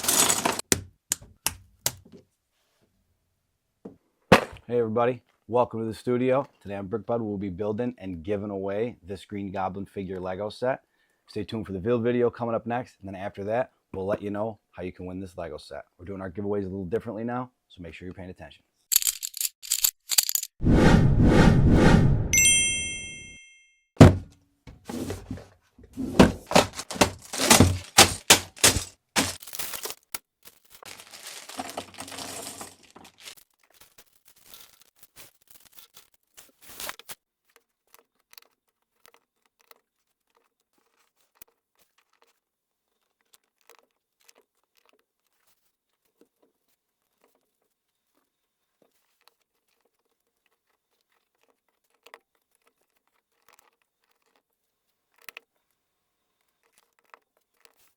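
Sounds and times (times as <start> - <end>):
packaging tearing and crinkling: 0.0 - 0.7, 26.4 - 37.2.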